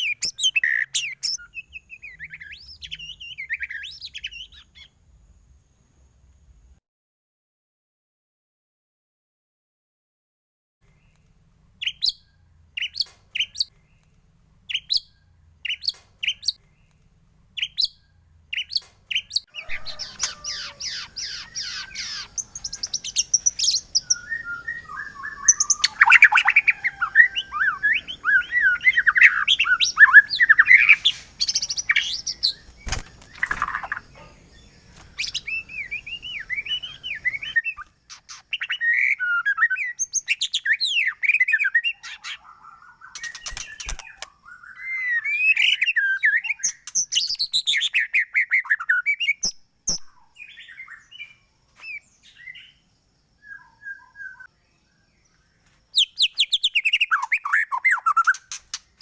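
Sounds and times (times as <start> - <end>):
bird chirps: 0.0 - 5.0, 10.8 - 59.0
bird song with trills: 0.0 - 5.0, 10.8 - 59.0
sharp click: 43.2 - 44.3.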